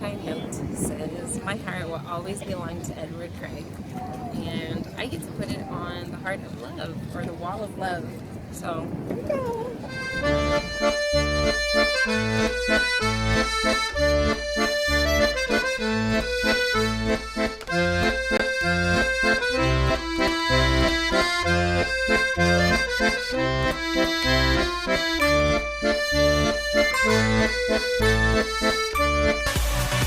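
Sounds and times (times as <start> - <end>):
upbeat accordion music: 9.9 - 30.0.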